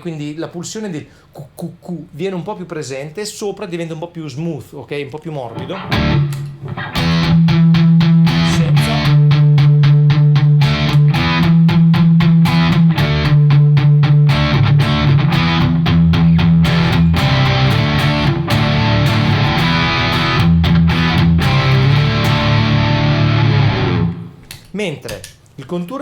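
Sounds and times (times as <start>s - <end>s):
overdriven electric guitar: 5.7s - 24.4s.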